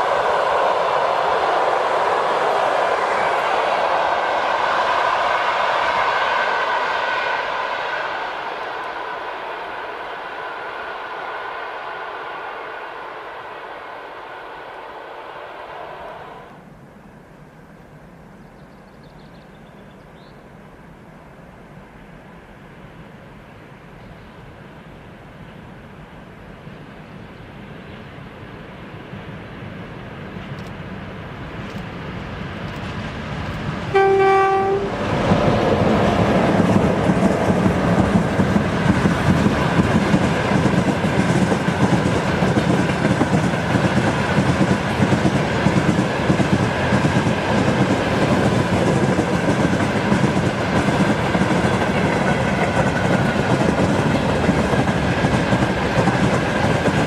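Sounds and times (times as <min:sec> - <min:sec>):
electric locomotive: 0:00.0 - 0:57.0
train wheels on rails: 0:00.0 - 0:57.0
train horn blast: 0:33.9 - 0:35.3.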